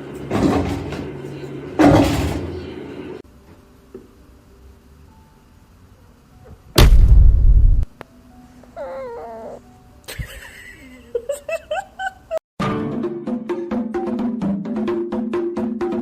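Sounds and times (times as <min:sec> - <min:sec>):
loud crash: 0:06.8 - 0:07.9
wavering animal cry: 0:08.7 - 0:09.8
music with percussive hits: 0:12.6 - 0:16.0.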